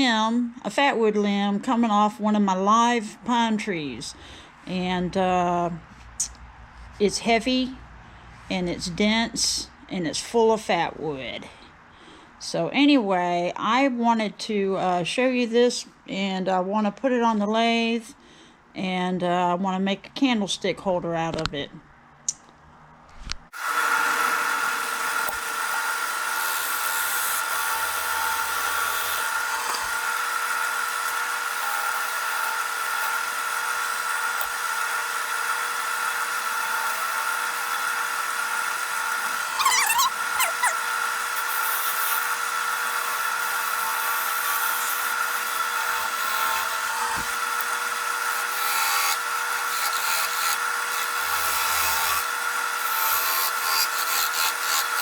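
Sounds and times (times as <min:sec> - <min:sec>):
wood lathe motor whine: 0:23.6 - 0:55.0.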